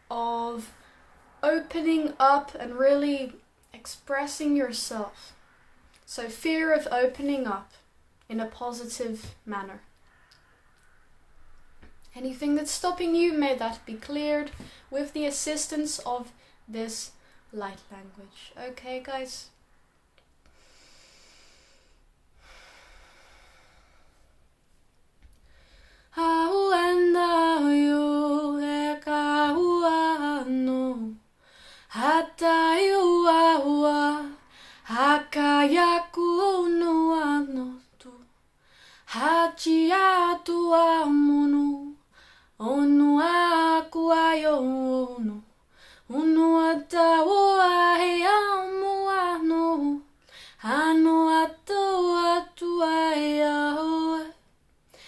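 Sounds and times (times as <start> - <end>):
woman singing wordless syllables: 0.0 - 0.8, 1.4 - 5.4, 12.1 - 19.6, 26.1 - 31.2, 31.9 - 38.3, 39.1 - 42.0, 42.6 - 45.5, 46.1 - 54.4.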